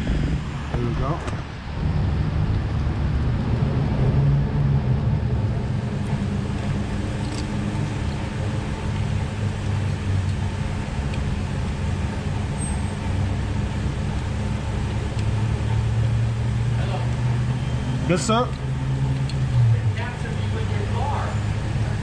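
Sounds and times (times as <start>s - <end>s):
car engine idling: 5.1s - 22.0s.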